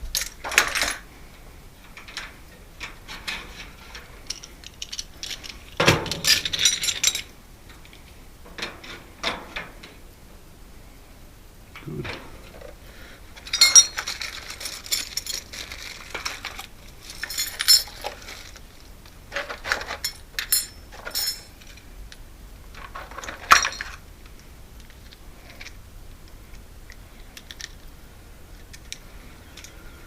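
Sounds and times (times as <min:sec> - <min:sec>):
metal lock parts clinking: 0:00.1 - 0:01.0, 0:01.8 - 0:08.0, 0:13.4 - 0:18.6, 0:19.3 - 0:21.8, 0:22.8 - 0:24.0.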